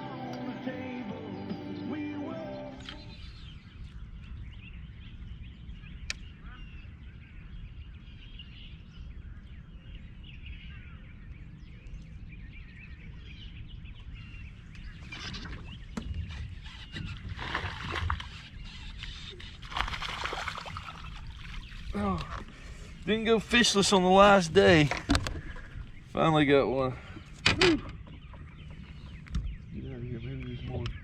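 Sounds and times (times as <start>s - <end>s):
birds chirping: 0.0s - 31.0s
low wind rumble: 3.0s - 31.0s
water splashing: 17.1s - 18.6s, 19.4s - 22.7s.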